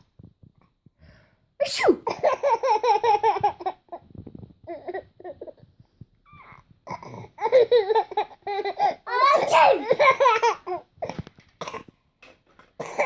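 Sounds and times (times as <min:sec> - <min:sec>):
baby giggling: 0:07.0 - 0:10.8.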